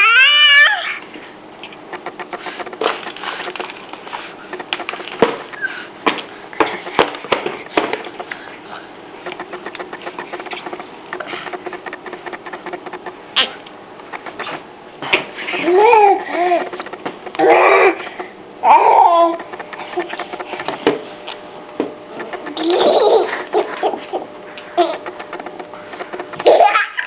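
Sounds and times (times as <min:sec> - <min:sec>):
baby whining: 0:00.0 - 0:01.0.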